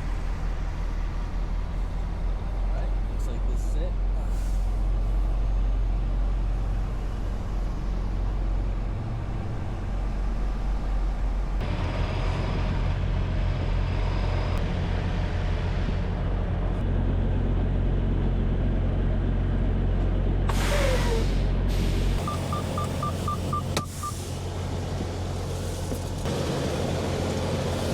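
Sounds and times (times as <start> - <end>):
diesel truck engine rumbling: 0.0 - 27.9
air brake hiss: 4.2 - 4.8, 20.5 - 22.2.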